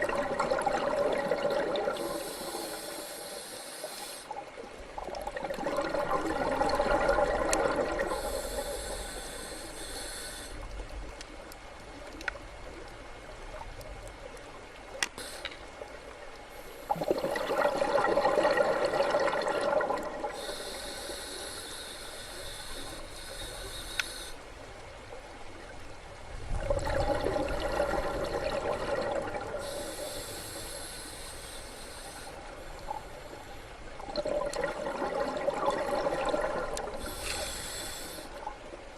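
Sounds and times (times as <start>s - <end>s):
exhaled bubbles rushing: 0.0s - 2.2s, 5.0s - 8.2s, 16.9s - 20.4s, 26.4s - 29.6s, 34.0s - 37.0s
regulator inhale hiss: 1.7s - 4.4s, 8.0s - 10.8s, 15.2s - 15.8s, 16.5s - 17.3s, 20.2s - 24.5s, 29.5s - 33.8s, 36.8s - 38.6s.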